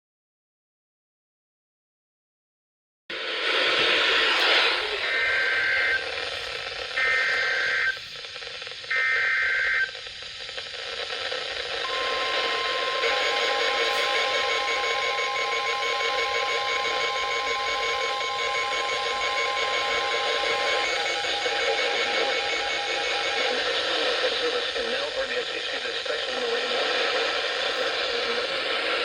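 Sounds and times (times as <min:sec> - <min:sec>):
radio static: 0:03.1 - 0:29.0
two-tone digital screech: 0:03.6 - 0:08.0, 0:11.8 - 0:24.2
steady warning alarm tone: 0:03.8 - 0:08.2, 0:08.9 - 0:09.9, 0:11.8 - 0:24.7.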